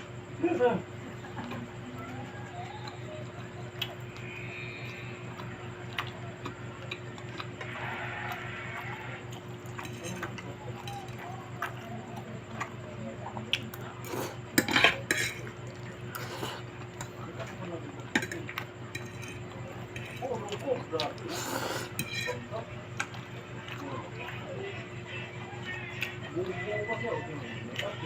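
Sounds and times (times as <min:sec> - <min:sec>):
low steady hum: 0:00.0 - 0:28.0
utensils clinking on a plate: 0:09.6 - 0:11.8, 0:14.0 - 0:17.1, 0:18.0 - 0:22.5.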